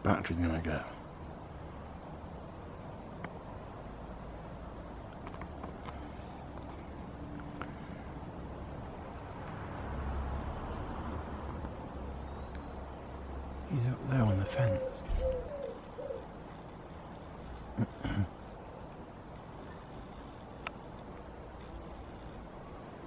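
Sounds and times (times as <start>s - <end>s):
faint high-pitched chirping: 0.0s - 18.3s
distant road traffic rumble: 0.0s - 23.0s
vehicle passing: 6.1s - 17.8s.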